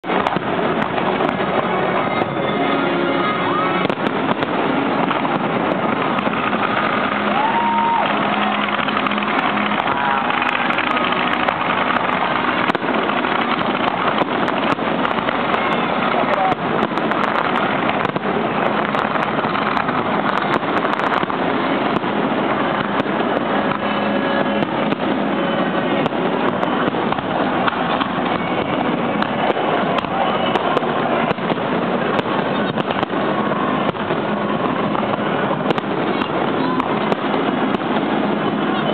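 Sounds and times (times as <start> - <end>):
firework rising whistle: 0.0 - 38.9
fireworks bangs: 0.0 - 38.9
fireworks crackling: 0.0 - 38.9
music: 1.7 - 3.9.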